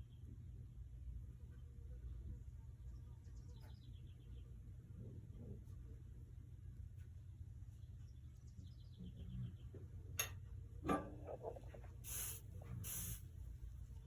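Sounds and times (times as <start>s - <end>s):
faint low hum: 0.0s - 14.0s
soldering iron sizzling: 12.1s - 13.2s.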